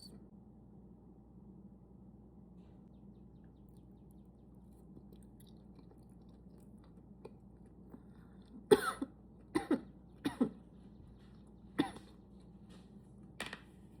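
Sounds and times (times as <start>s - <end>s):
faint chewing of food: 2.5s - 13.0s
loud cough: 8.7s - 10.6s, 11.8s - 12.1s.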